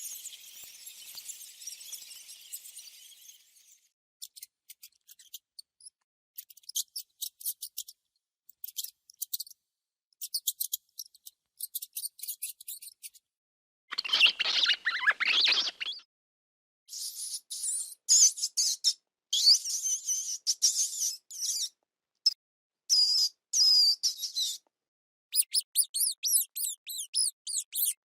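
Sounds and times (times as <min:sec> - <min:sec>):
mouse squeaking: 0:04.2 - 0:08.0, 0:08.6 - 0:09.6, 0:10.2 - 0:13.2, 0:13.9 - 0:16.1, 0:17.0 - 0:21.8, 0:22.9 - 0:24.6, 0:25.3 - 0:28.0.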